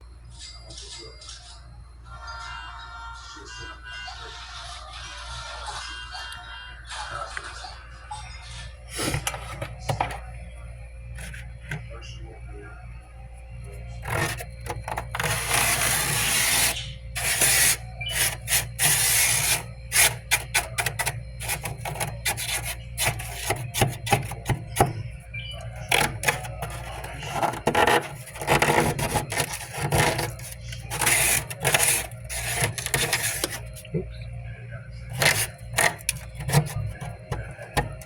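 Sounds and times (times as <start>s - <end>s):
steady low hum: 7.8s - 38.0s
ice scraping: 14.0s - 25.0s, 25.6s - 33.9s, 35.1s - 38.0s.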